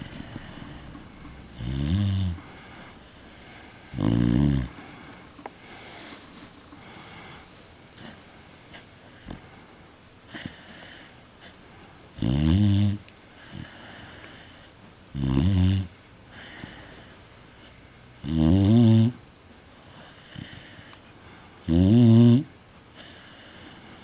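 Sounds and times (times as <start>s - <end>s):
dog snoring: 0.0s - 9.6s, 10.3s - 19.2s, 19.9s - 24.0s
soft airy breaths: 0.0s - 12.1s, 13.2s - 14.9s, 16.2s - 18.2s, 19.5s - 21.6s, 22.8s - 24.0s.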